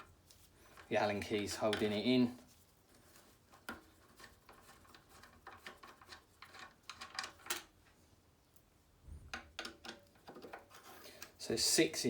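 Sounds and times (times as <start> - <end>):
allen key clicking and scraping: 4.0 - 7.7.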